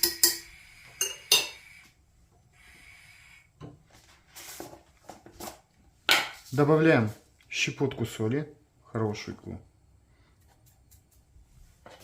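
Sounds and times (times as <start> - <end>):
metal fork clinking on saucepan: 0.0 - 1.6
porridge boiling: 0.0 - 6.0.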